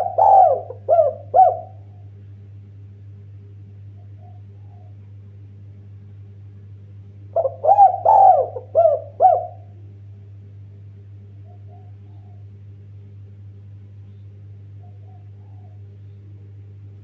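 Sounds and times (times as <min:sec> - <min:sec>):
dove cooing: 0:00.0 - 0:02.0, 0:04.0 - 0:05.0, 0:07.3 - 0:09.8, 0:11.4 - 0:12.6, 0:14.8 - 0:16.0
steady low hum: 0:00.0 - 0:17.0.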